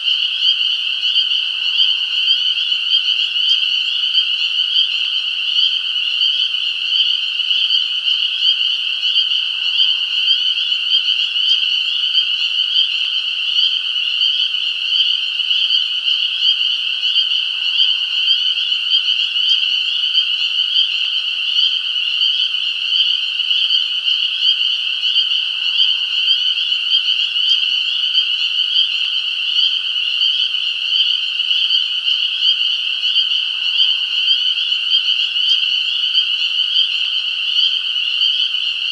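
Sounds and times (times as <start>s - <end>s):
frogs chorus trilling: 0.0s - 38.9s.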